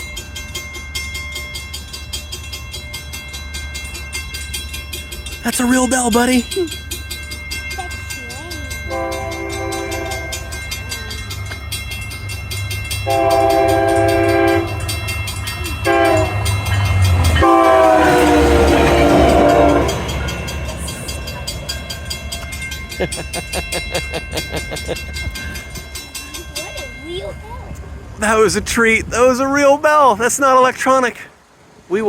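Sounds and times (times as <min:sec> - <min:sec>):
railroad crossing bell ringing: 0:00.0 - 0:28.6
train rumble: 0:00.0 - 0:30.7
train horn blasts: 0:08.9 - 0:10.8, 0:13.0 - 0:22.6.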